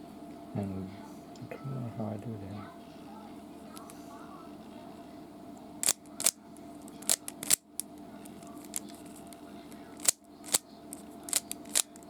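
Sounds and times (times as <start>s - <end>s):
puzzle cube twisting clicks: 5.8s - 9.2s, 9.9s - 12.0s.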